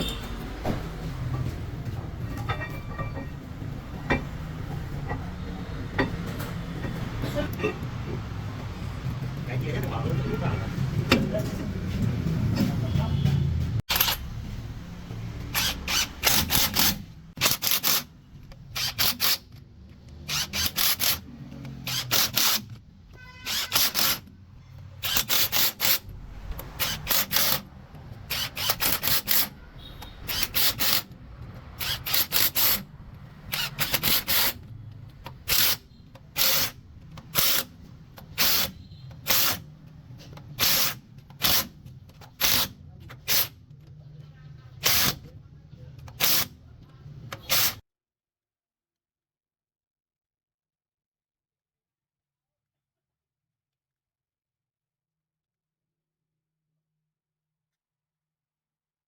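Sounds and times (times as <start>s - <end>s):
pneumatic tool air hiss: 31.8s - 32.8s, 35.5s - 35.8s, 36.4s - 36.8s, 38.4s - 39.6s, 40.6s - 41.7s, 47.4s - 47.8s.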